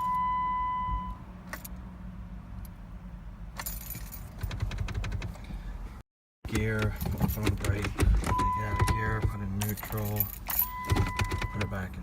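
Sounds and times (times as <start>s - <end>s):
car warning beep: 0.0s - 1.2s, 8.2s - 9.7s, 10.5s - 12.0s
keys jangling: 3.6s - 4.7s, 9.6s - 10.8s.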